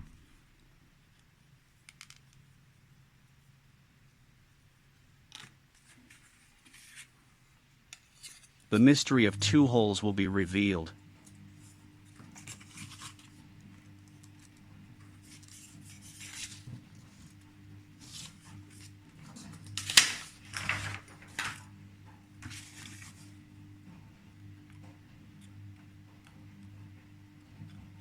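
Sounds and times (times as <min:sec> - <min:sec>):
small parts rustling and scraping: 0:05.3 - 0:07.2, 0:07.9 - 0:08.7, 0:15.2 - 0:17.3
low hum: 0:08.8 - 0:11.0.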